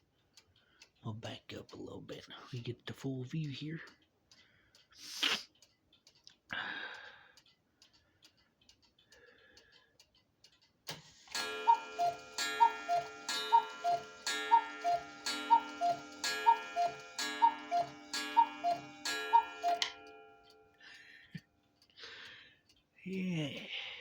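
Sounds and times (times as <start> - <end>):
clock ticking: 0.0 - 24.0
cuckoo clock call: 11.3 - 21.4.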